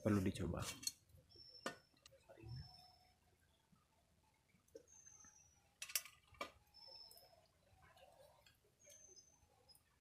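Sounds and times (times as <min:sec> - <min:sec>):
faint high-pitched chirps: 0:01.1 - 0:10.0
small clicks: 0:05.8 - 0:07.3.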